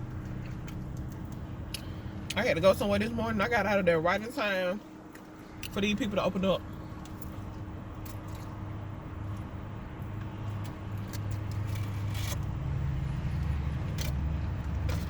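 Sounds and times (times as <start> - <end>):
road traffic rumble: 0.0 - 15.0
vehicle passing close: 10.4 - 15.0.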